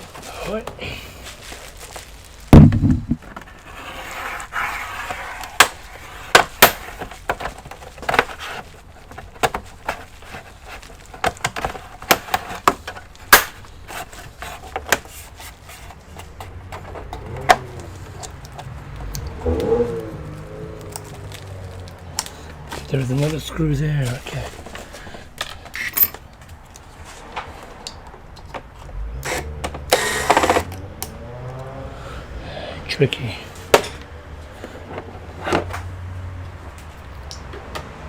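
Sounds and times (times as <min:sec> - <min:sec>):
heavy thump: 0:02.5 - 0:03.3
plastic case clicks and knocks: 0:02.6 - 0:03.5
short scrape: 0:19.4 - 0:20.3.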